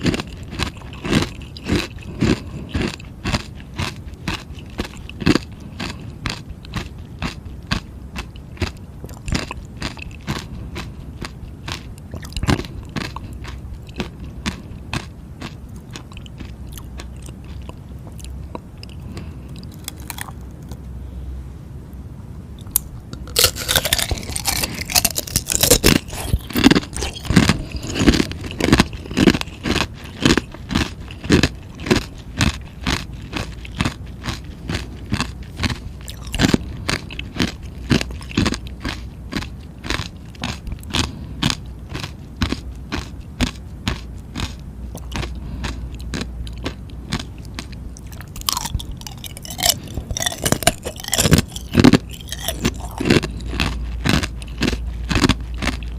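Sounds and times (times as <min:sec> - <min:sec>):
person crunching ice: 0:00.0 - 0:17.6, 0:18.9 - 0:20.4, 0:22.7 - 0:55.9.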